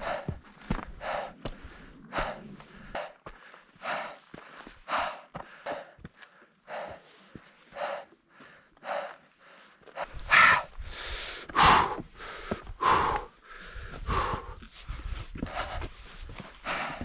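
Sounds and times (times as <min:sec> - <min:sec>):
person breathing hard: 0:00.0 - 0:17.0.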